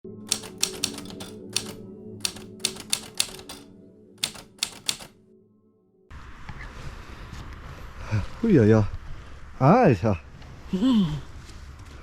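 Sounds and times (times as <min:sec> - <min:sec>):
sharp clacks: 0:04.2 - 0:05.1.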